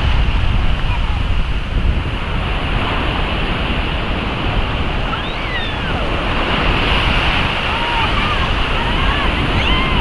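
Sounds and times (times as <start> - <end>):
sea surf washing on shore: 0.0 - 10.0
wind buffeting microphone: 0.0 - 10.0.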